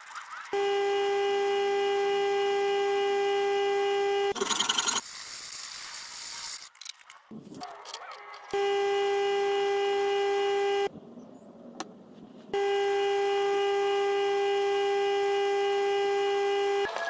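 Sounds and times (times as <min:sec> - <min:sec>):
scraping and rubbing: 0:04.4 - 0:08.6.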